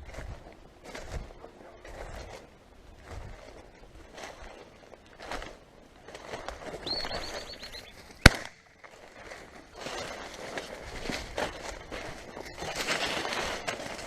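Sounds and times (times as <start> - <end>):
rustling through vegetation: 0.0 - 14.0
high repeated chirps: 6.8 - 8.0
shotgun shot: 8.2 - 8.6.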